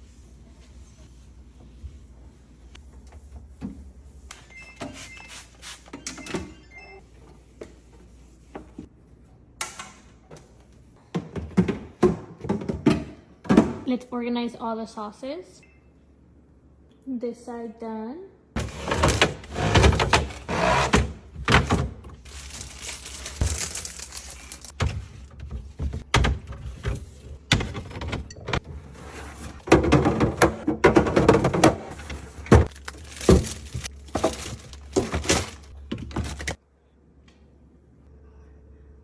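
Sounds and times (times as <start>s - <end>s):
bottles and jars clinking on shelves: 11.0s - 13.9s, 18.6s - 36.6s.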